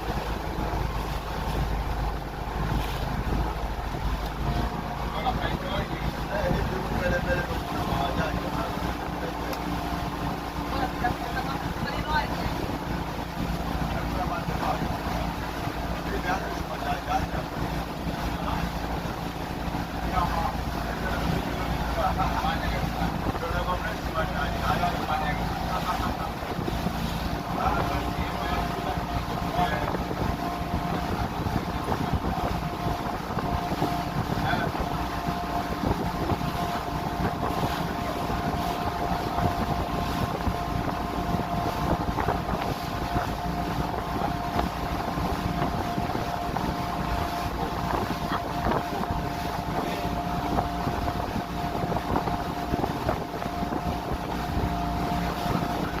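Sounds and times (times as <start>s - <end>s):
motorboat engine droning: 0.0s - 56.0s
wind noise on microphone: 0.0s - 56.0s.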